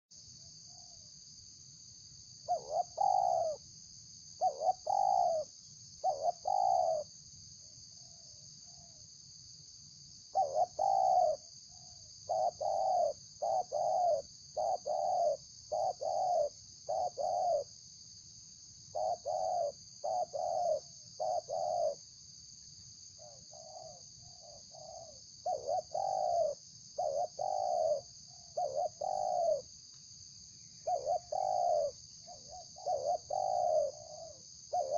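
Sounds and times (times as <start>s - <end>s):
steady high-pitched hiss: 0.1s - 34.9s
dove cooing: 2.5s - 3.6s, 4.4s - 7.1s, 10.3s - 17.7s, 18.9s - 22.0s, 23.2s - 29.7s, 30.8s - 34.9s.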